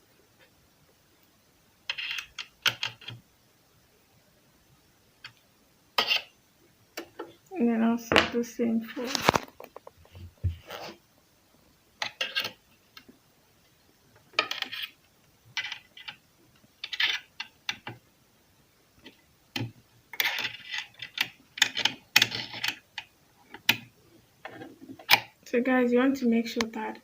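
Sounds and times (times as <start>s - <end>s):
screwdriver clicks and scrapes: 6.0s - 6.3s.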